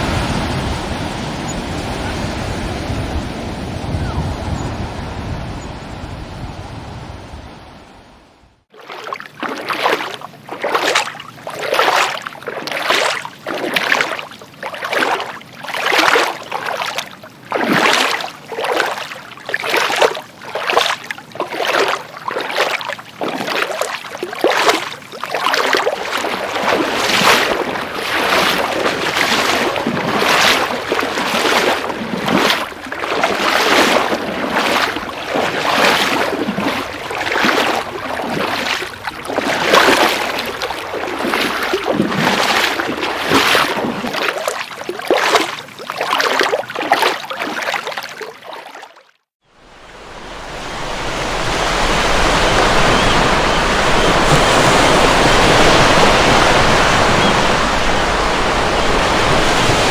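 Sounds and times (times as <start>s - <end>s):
sea surf: 0.0s - 14.2s, 24.4s - 44.4s, 49.5s - 59.9s
water splashing against rocks: 8.8s - 48.8s, 49.6s - 59.9s.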